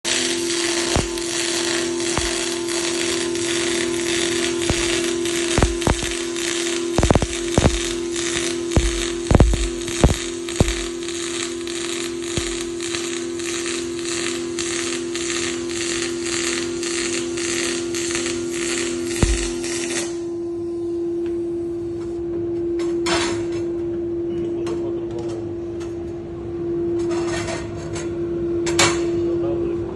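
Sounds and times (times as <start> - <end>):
welding arc crackling hiss: 0.1 - 20.2
steady hum: 0.1 - 22.8
sharp clicks: 7.0 - 7.8.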